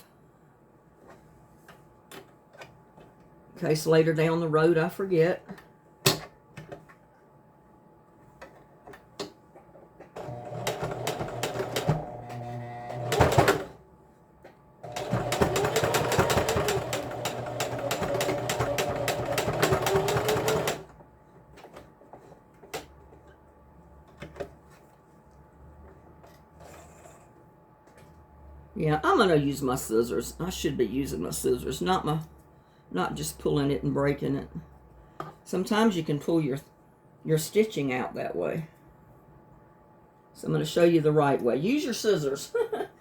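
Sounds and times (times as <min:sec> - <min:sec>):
sewing machine stitching: 0:10.2 - 0:13.8, 0:14.8 - 0:20.9.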